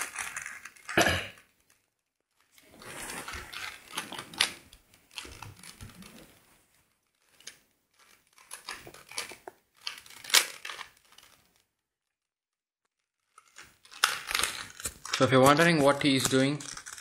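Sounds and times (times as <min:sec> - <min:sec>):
puzzle cube plastic clicking: 0:07.2 - 0:11.4.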